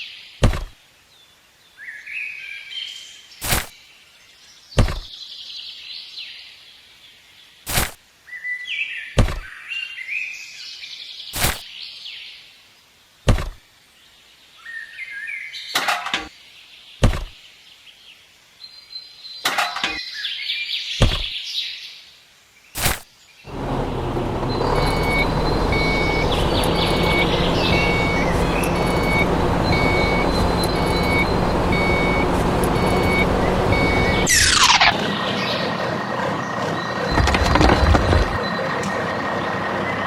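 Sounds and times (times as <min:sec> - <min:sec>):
small birds chirping: 0:24.4 - 0:35.8.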